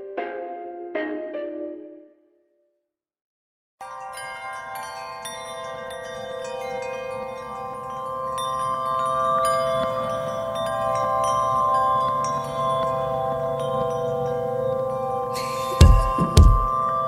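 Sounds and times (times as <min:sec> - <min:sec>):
chimes and bells music: 0:03.8 - 0:17.0.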